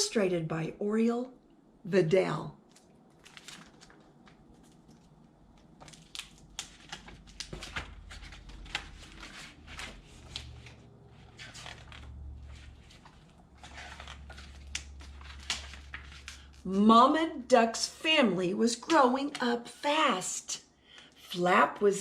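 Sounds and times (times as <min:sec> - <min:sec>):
book pages turning: 0:02.6 - 0:16.7
paper rustling and crinkling: 0:02.7 - 0:16.6.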